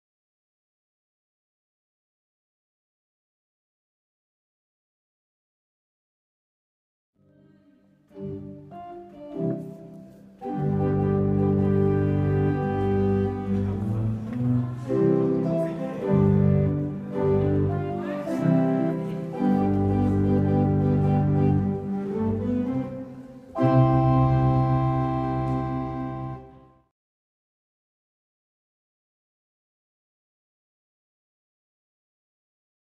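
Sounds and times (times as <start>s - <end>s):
pipe organ playing chords: 8.1s - 26.8s.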